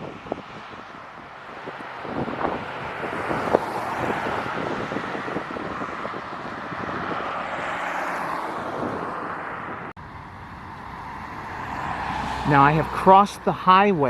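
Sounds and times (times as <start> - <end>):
highway traffic rushing: 0.0 - 14.0
wind buffeting microphone: 0.0 - 14.0.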